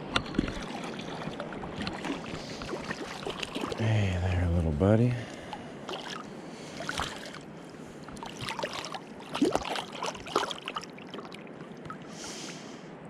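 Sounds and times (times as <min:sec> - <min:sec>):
water splashing and sloshing: 0:00.0 - 0:13.0.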